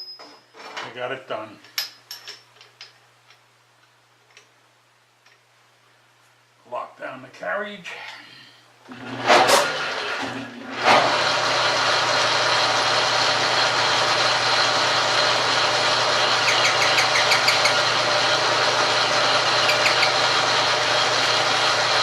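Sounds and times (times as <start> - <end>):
metal lathe motor humming: 8.9 - 22.0.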